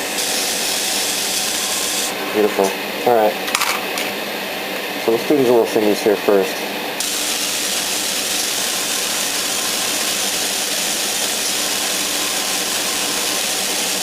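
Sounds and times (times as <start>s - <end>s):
airbrush spraying paint: 0.0s - 2.2s, 7.0s - 14.0s.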